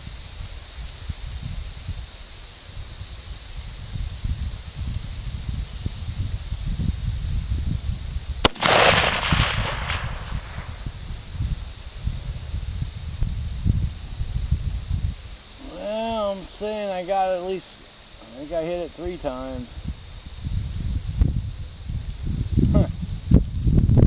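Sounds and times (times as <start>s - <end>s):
rifle shot: 8.4s - 11.1s.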